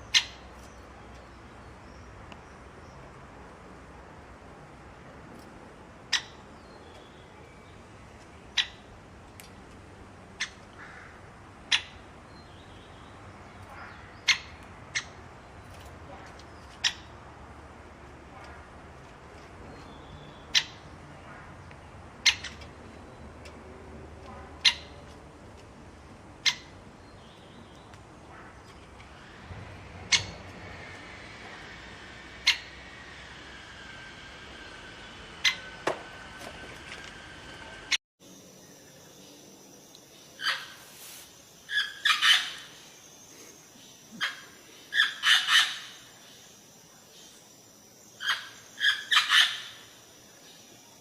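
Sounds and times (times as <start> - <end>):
bird giving sharp calls: 22.2 - 22.7, 30.1 - 30.5, 32.4 - 32.9, 35.4 - 35.8, 40.4 - 40.9, 41.7 - 42.8, 44.2 - 46.1, 48.2 - 49.9.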